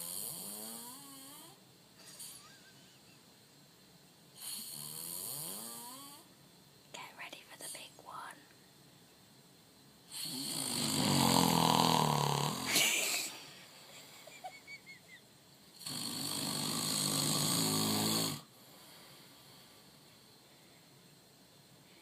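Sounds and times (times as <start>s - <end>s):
man snoring loudly: 0.0s - 1.6s, 4.4s - 6.3s, 10.1s - 12.9s, 15.8s - 18.5s.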